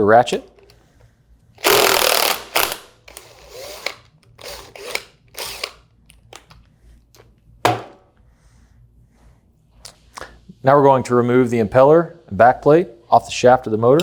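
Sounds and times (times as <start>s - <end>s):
impact wrench bursts: 1.6s - 5.8s.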